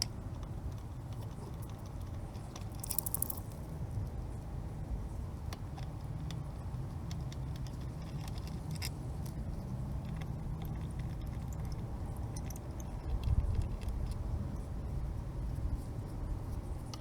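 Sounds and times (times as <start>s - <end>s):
metallic clicks of tools: 2.6s - 3.6s.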